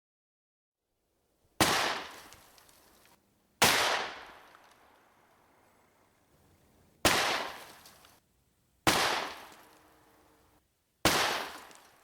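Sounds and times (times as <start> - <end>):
handgun shots with echo: 7.1 - 7.8, 8.9 - 9.8, 11.1 - 12.0.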